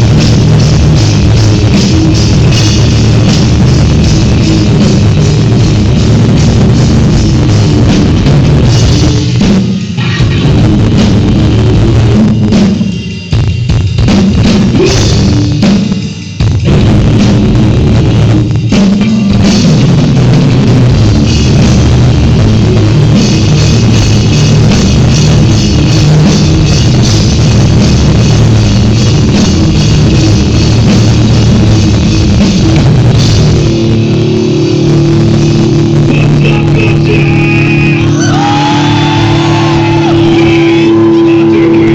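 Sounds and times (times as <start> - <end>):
drum kit and bass drum: 0.0 - 41.9
rock band playing loudly: 0.0 - 41.9.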